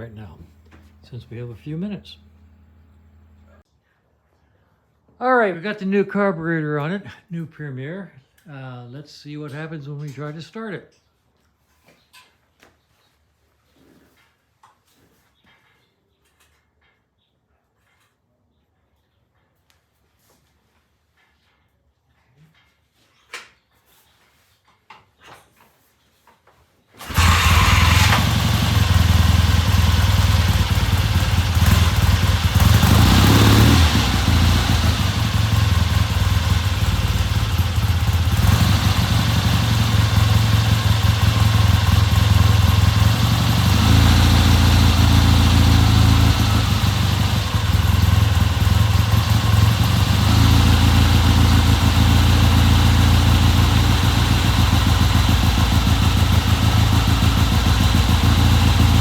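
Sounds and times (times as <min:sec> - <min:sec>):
motorcycle engine running: 0:00.0 - 0:03.6, 0:27.0 - 0:59.0.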